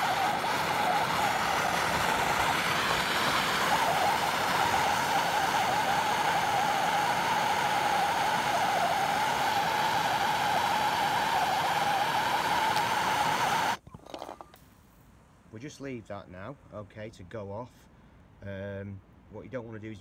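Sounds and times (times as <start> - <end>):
blow lamp hissing: 0.0 - 13.8.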